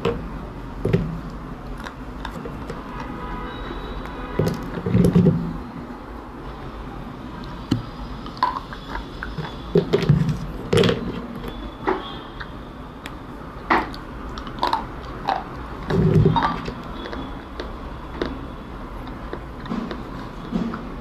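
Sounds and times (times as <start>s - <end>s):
crunchy biting and chewing: 1.6s - 3.1s, 8.2s - 11.6s, 13.8s - 21.0s.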